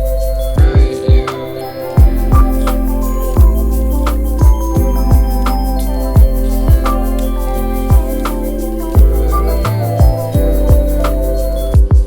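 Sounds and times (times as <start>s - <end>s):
deep bass: 0.0s - 1.3s, 2.0s - 12.0s
synth chords: 0.0s - 12.0s
kick drum beat: 0.1s - 1.4s, 2.0s - 2.6s, 3.4s - 5.5s, 6.2s - 7.1s, 7.8s - 8.2s, 9.0s - 11.0s, 11.7s - 12.0s.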